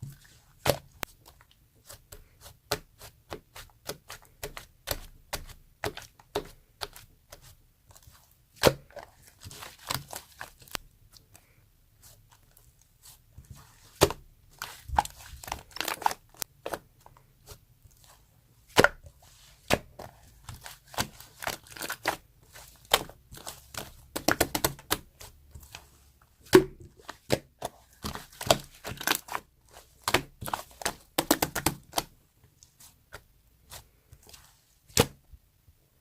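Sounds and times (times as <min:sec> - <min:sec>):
slime crackling: 0:12.0 - 0:35.0.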